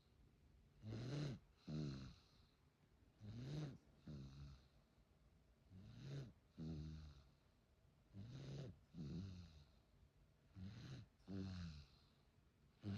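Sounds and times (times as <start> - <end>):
baby snoring: 0.8 - 2.2.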